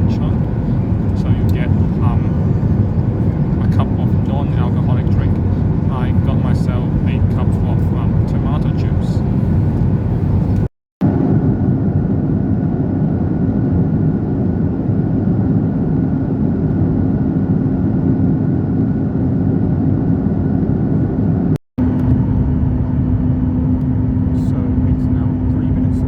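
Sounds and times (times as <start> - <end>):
steady hum: 0.0 - 13.5
aircraft cabin engine rumble: 0.0 - 26.0.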